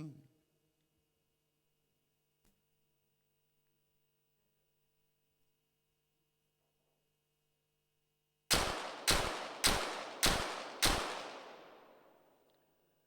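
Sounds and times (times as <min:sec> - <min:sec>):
pistol shots echoing: 0:08.5 - 0:12.6.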